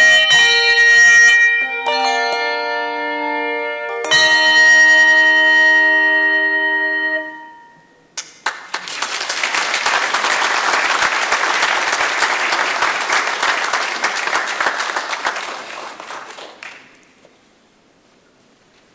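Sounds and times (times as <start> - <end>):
handbells ringing a chord: 0.0 - 8.1
audience applauding: 8.2 - 17.3.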